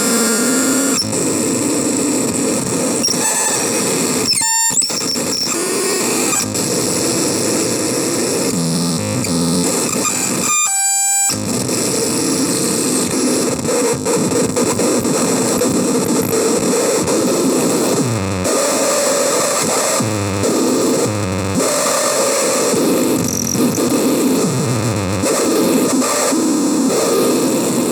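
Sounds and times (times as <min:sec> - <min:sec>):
clean pitched buzz: 0:00.0 - 0:01.8, 0:22.9 - 0:24.1.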